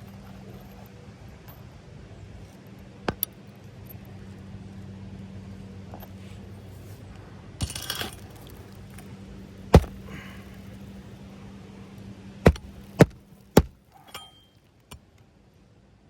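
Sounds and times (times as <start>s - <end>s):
nails hammered into shingle: 9.8s - 10.4s, 12.5s - 13.8s.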